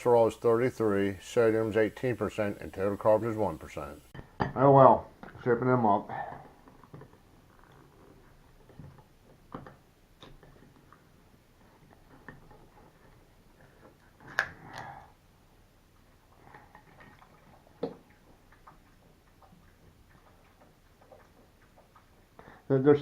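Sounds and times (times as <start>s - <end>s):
faint wet squishing: 6.2s - 23.0s.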